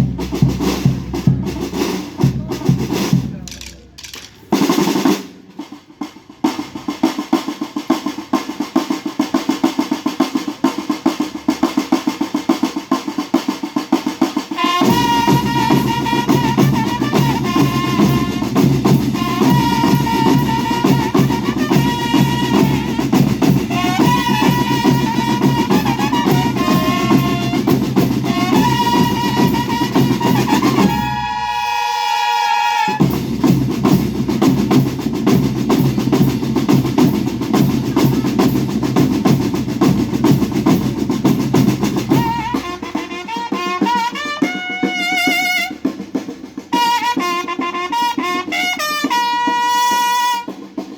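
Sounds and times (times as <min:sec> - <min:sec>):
bass drums: 0:00.0 - 0:05.1, 0:14.8 - 0:31.3, 0:33.0 - 0:43.2
band playing march tune: 0:00.0 - 0:50.9.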